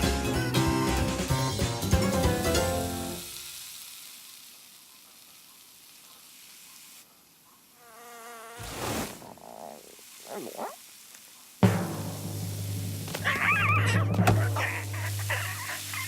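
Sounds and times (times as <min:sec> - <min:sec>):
cartoon hiss: 0:02.5 - 0:07.1, 0:07.7 - 0:16.0
wavering insect-like buzz: 0:07.7 - 0:10.9, 0:13.1 - 0:16.0.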